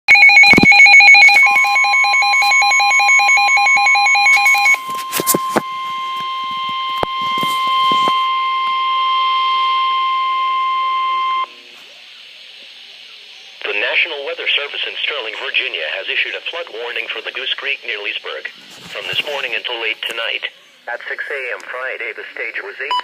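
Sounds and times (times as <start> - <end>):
rapid electronic beeping alarm: 0.1 - 11.6.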